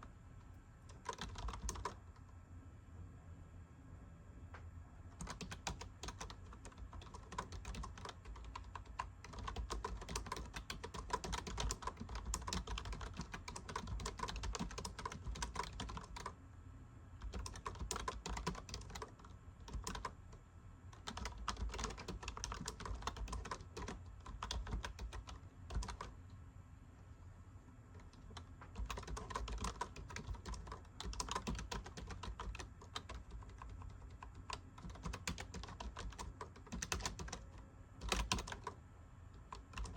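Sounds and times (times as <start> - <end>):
computer keyboard typing: 0.9 - 2.0, 5.2 - 16.4, 17.2 - 20.2, 21.0 - 26.1, 28.0 - 38.8, 39.4 - 39.9.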